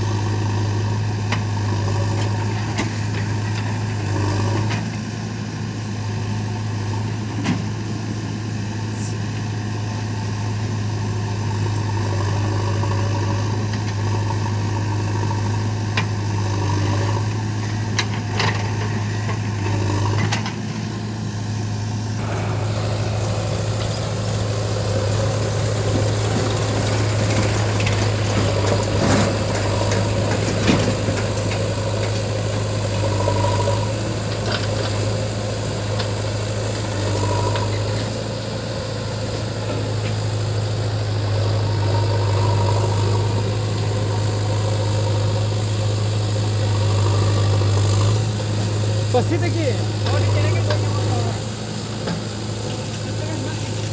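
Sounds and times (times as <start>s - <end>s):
diesel engine running: 0.0s - 53.9s
engine knocks: 22.2s - 53.9s.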